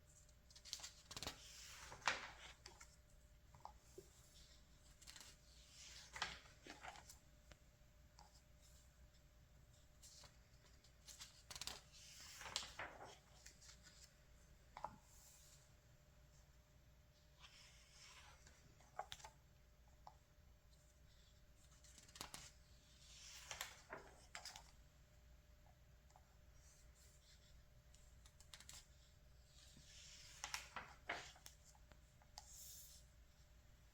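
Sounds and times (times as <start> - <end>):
magazine pages turning: 0.5 - 2.9, 4.4 - 7.2, 10.0 - 14.2, 29.6 - 31.7.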